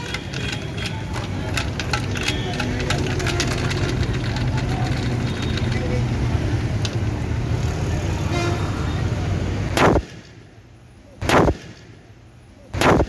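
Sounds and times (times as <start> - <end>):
pipe gun bangs: 9.7 - 10.4, 11.2 - 11.9, 12.8 - 13.0.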